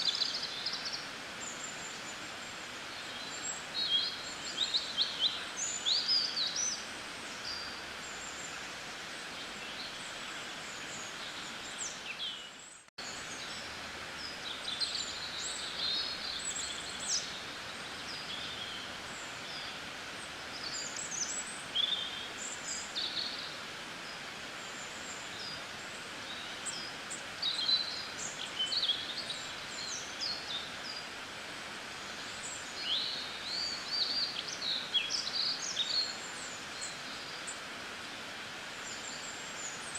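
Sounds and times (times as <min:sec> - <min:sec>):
small birds chirping and trilling: 0:00.0 - 0:39.9
steady outdoor hiss: 0:00.0 - 0:39.9.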